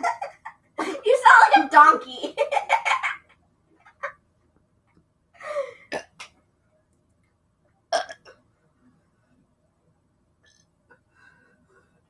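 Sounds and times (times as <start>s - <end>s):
person burping: 5.9s - 6.3s, 7.9s - 8.4s.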